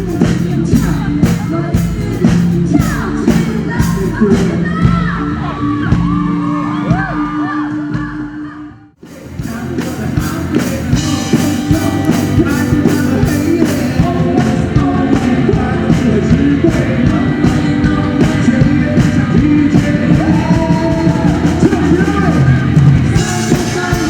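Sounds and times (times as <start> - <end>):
steady drum beat: 0.0 - 7.3, 9.0 - 24.0
live rock band music: 0.0 - 8.1, 9.0 - 24.0
person singing: 0.0 - 24.0.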